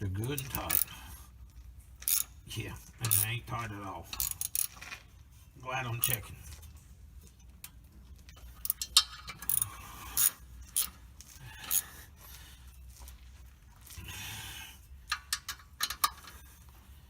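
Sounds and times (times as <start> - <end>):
ratchet clicking: 2.0 - 2.4, 3.0 - 3.3, 4.1 - 5.0, 8.5 - 11.0.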